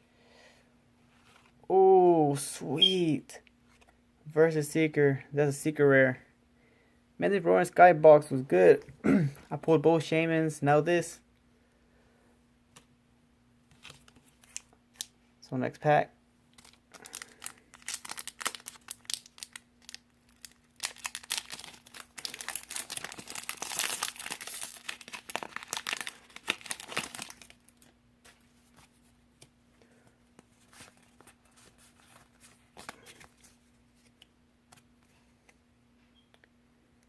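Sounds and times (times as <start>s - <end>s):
foil wrapper crinkling and tearing: 13.8s - 15.1s, 16.5s - 29.0s.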